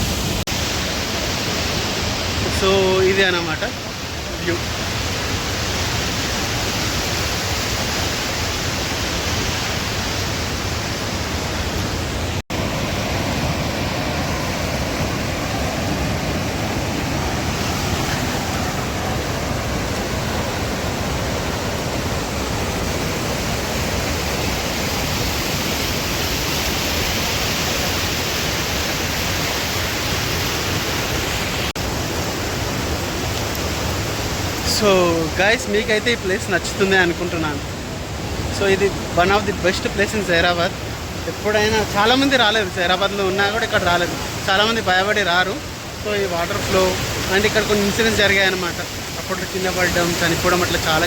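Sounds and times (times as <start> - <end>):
waterfall rushing: 0.0 - 51.0.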